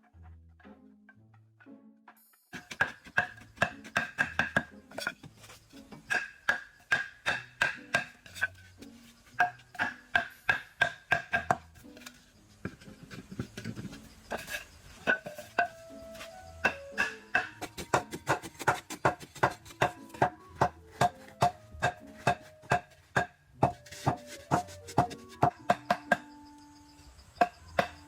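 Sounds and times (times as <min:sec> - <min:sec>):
soft background music: 0:00.0 - 0:28.0
metal blade chopping wood: 0:02.5 - 0:08.7, 0:09.3 - 0:15.9, 0:16.6 - 0:26.2.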